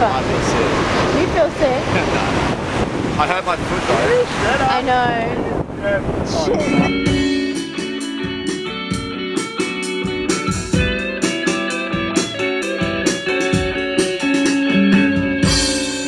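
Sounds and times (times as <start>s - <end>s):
guitar playing plucked notes: 6.3s - 16.0s.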